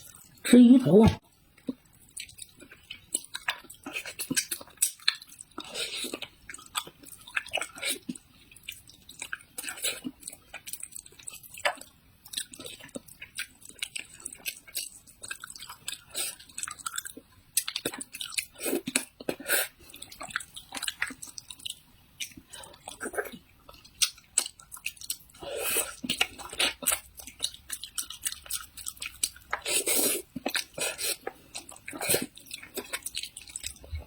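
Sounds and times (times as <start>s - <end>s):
person chewing food: 0.0s - 0.4s, 1.6s - 34.0s.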